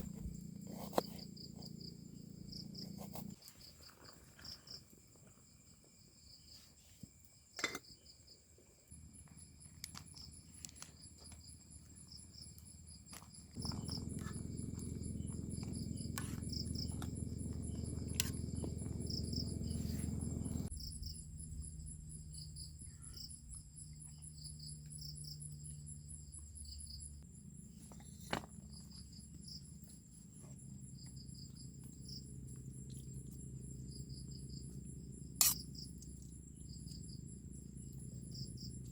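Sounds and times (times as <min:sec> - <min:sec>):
crickets and insects chirping: 0:00.0 - 0:38.9
faint low hum: 0:08.8 - 0:38.9.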